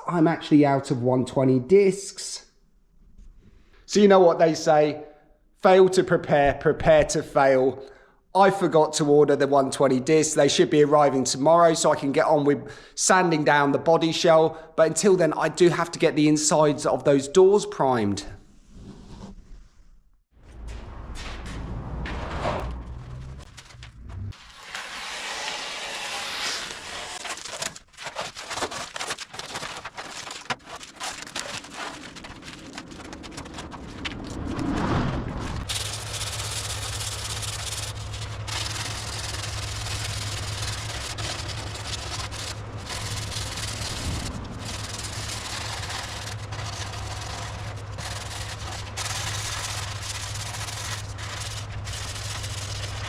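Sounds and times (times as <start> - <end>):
power tool motor humming: 24.5 - 27.2
hand sanding: 35.7 - 53.0.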